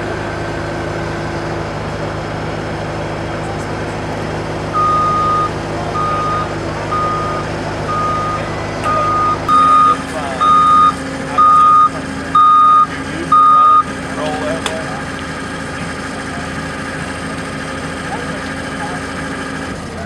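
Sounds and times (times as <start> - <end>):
diesel engine running: 0.0 - 20.0
reversing alarm beeping: 4.7 - 14.0.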